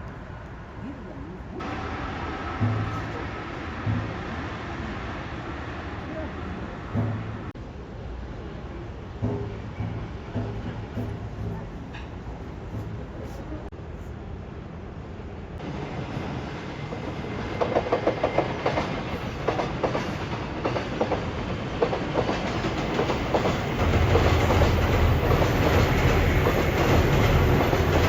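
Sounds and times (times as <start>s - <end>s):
deep train rumble: 0.0s - 28.0s
train wheels clicking on rails: 1.6s - 7.6s, 9.0s - 13.5s, 16.8s - 28.0s.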